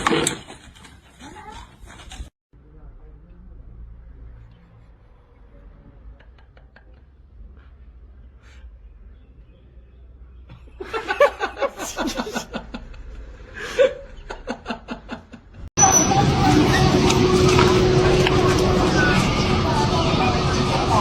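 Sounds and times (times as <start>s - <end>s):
person laughing: 10.5s - 15.3s
low hum: 15.8s - 21.0s.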